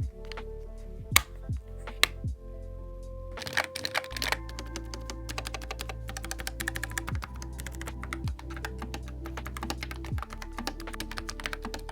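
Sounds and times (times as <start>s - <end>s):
background music: 0.0s - 11.9s
fast typing on mechanical keyboard: 3.4s - 11.9s.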